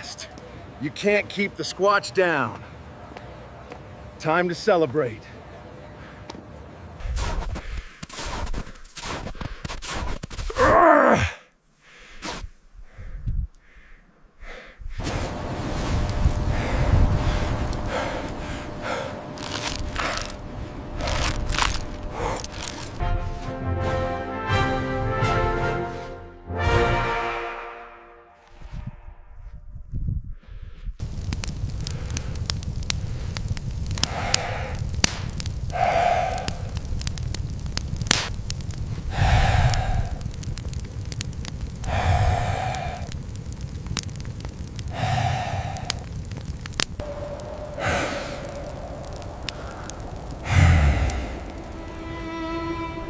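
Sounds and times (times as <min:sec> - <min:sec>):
steady low rumble: 0:12.5 - 0:23.9, 0:28.6 - 0:53.0
campfire crackling and popping: 0:14.9 - 0:23.6, 0:31.0 - 0:53.0
person exhaling: 0:35.7 - 0:36.7, 0:39.1 - 0:40.2, 0:41.9 - 0:43.1, 0:44.9 - 0:46.1, 0:47.0 - 0:51.7
person gasping for breath: 0:35.7 - 0:36.7, 0:39.1 - 0:40.3, 0:41.8 - 0:43.2, 0:44.9 - 0:46.1, 0:47.7 - 0:48.7, 0:49.5 - 0:51.6.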